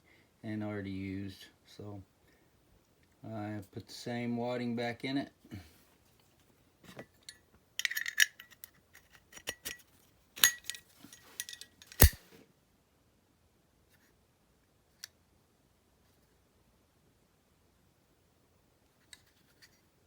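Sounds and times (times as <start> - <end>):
metal lighter clicking: 11.9 - 12.2.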